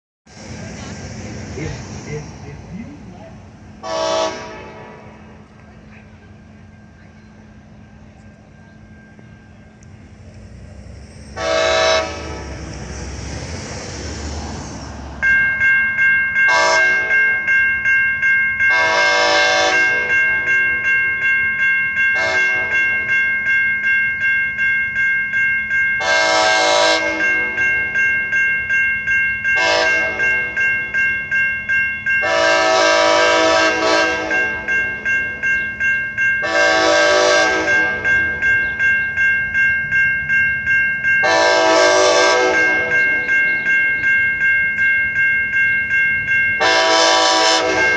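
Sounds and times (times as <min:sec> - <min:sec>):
train rumble: 0:00.3 - 0:47.9
locomotive horn blasts: 0:03.8 - 0:05.4, 0:11.4 - 0:12.8, 0:16.5 - 0:17.5, 0:18.7 - 0:20.2, 0:22.2 - 0:23.1, 0:26.0 - 0:27.6, 0:29.6 - 0:30.4, 0:32.2 - 0:34.7, 0:36.4 - 0:38.4, 0:41.2 - 0:43.2, 0:46.6 - 0:47.9
bell ringing steadily: 0:05.3 - 0:10.3, 0:15.2 - 0:47.9.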